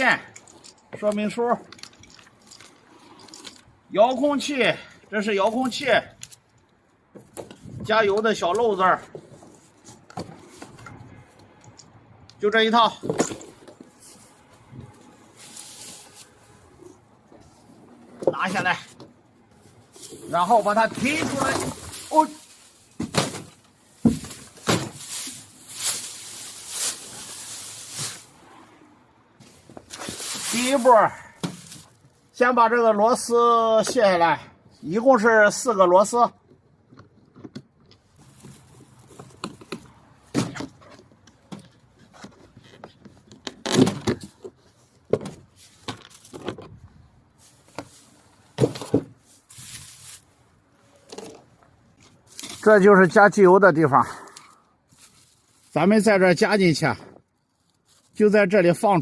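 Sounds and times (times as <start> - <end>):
packaging rustling and scraping: 12.9 - 17.8, 18.4 - 28.5, 29.4 - 32.2, 38.0 - 40.0, 47.3 - 52.9, 54.9 - 55.8, 57.3 - 58.3.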